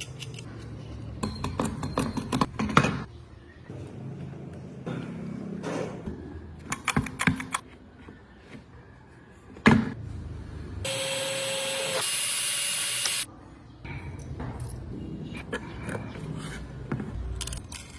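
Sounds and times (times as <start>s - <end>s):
power tool running: 10.9s - 13.3s.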